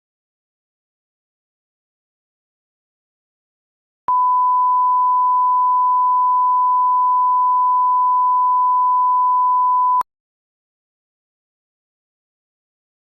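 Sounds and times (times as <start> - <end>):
steady electronic beep: 4.1 - 10.0.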